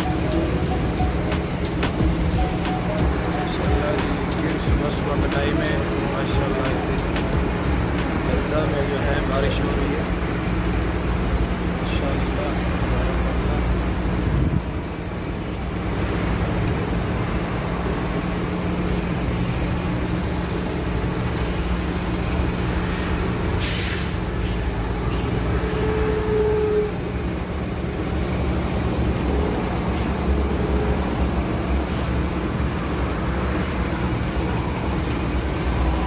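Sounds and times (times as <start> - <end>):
traffic on a wet road: 0.0 - 36.0
short sharp hiss: 23.6 - 25.2.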